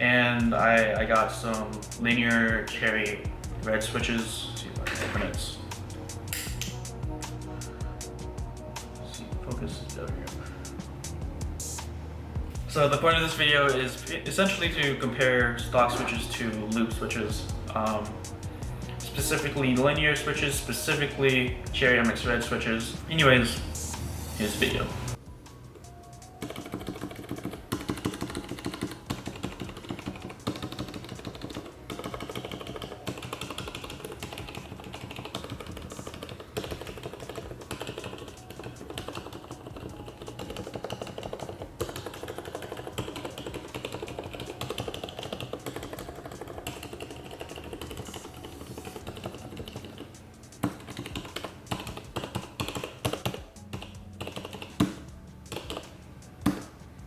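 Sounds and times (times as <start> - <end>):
rapid keyboard keystrokes: 26.3 - 56.7.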